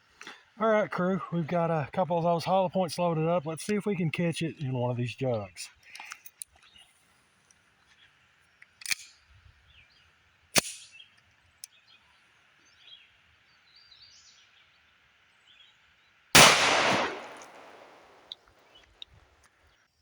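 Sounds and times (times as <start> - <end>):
pistol shot: 16.4 - 18.4.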